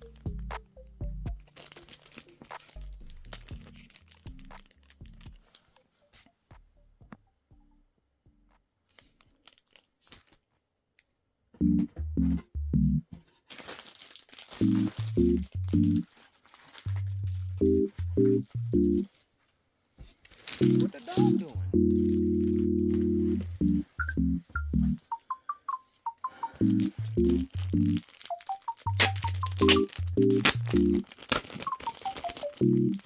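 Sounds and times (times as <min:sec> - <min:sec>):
music with bouncy bass line: 0:00.0 - 0:01.5, 0:11.6 - 0:13.0, 0:14.6 - 0:16.0, 0:16.9 - 0:19.0, 0:20.6 - 0:25.8, 0:26.6 - 0:31.0, 0:31.7 - 0:33.0
crinkling noises: 0:00.0 - 0:06.4, 0:08.8 - 0:12.4, 0:13.1 - 0:33.0
scattered clicks: 0:22.5 - 0:33.0.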